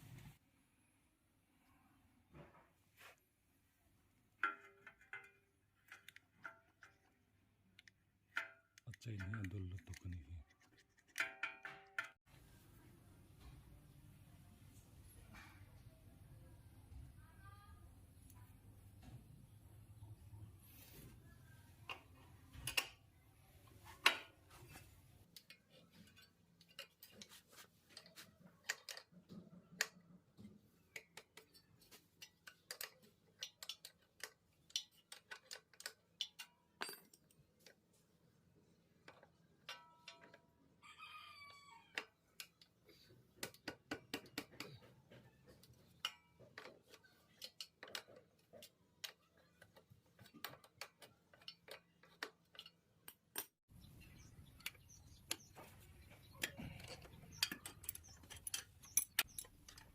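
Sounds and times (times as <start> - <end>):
rooster crowing: 40.8 - 42.0
metallic clicks from bike chain: 56.4 - 59.9.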